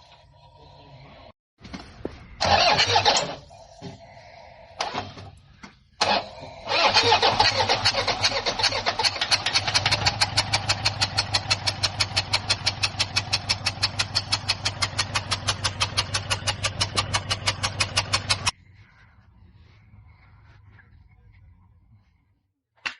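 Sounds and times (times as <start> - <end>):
diesel engine clattering: 6.0 - 18.6.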